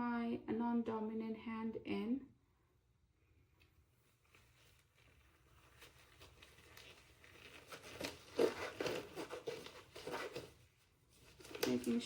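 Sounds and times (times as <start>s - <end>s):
glove rustling and crinkling: 4.0s - 12.0s.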